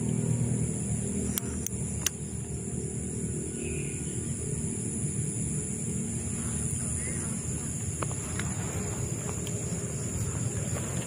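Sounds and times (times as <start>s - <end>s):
high insect drone: 0.0s - 11.0s
low engine-like rumble: 0.0s - 11.0s
sharp clicks: 1.2s - 2.3s.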